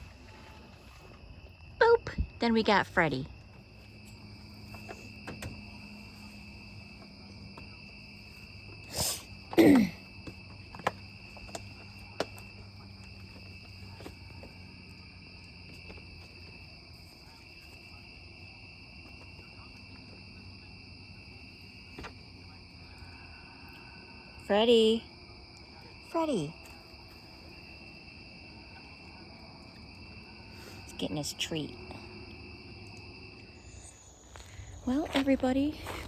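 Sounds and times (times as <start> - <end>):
night insects chirring: 0.0 - 36.0.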